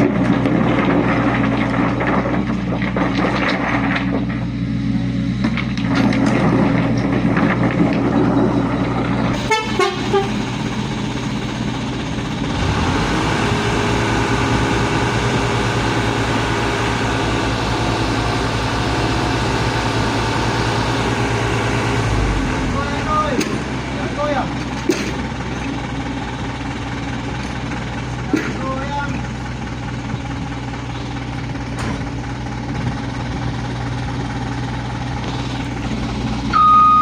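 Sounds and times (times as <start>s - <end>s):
diesel truck engine running: 0.0s - 37.0s
multi-tone truck horn: 9.4s - 10.4s.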